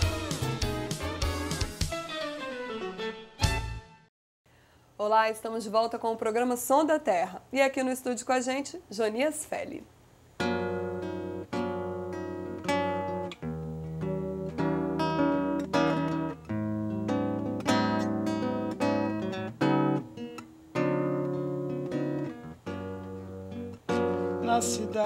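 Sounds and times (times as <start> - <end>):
acoustic guitar strummed and plucked: 0.0 - 3.1, 10.4 - 25.0.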